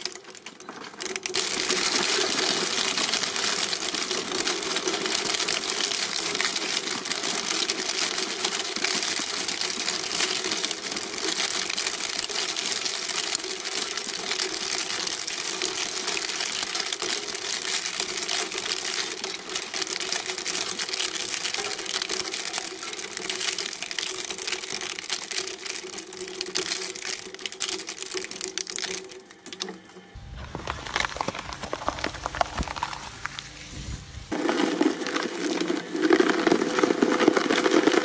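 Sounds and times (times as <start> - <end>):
shredder crunching material: 1.3 - 8.5, 30.2 - 37.6.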